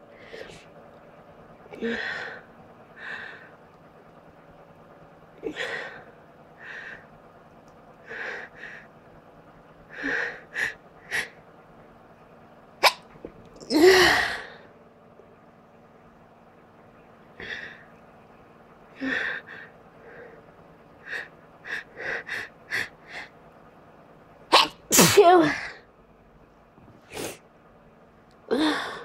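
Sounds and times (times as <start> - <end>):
person sneezing loudly: 12.8 - 13.0, 24.5 - 25.6.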